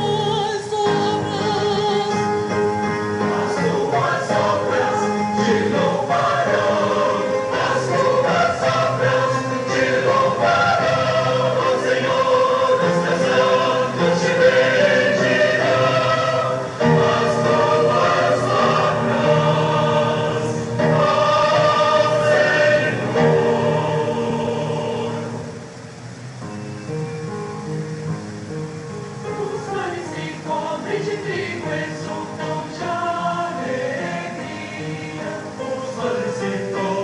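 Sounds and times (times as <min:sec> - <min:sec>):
church choir singing a hymn: 0:00.0 - 0:25.8, 0:29.2 - 0:37.0.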